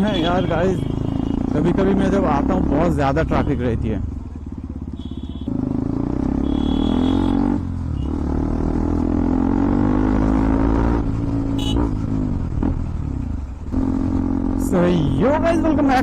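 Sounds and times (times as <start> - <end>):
motorcycle engine accelerating: 4.0 - 16.0.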